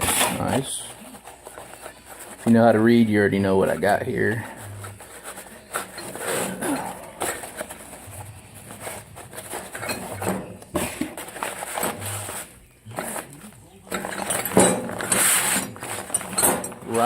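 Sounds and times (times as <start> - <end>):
metal tools clicking and clinking: 9.6 - 10.6, 13.8 - 17.0.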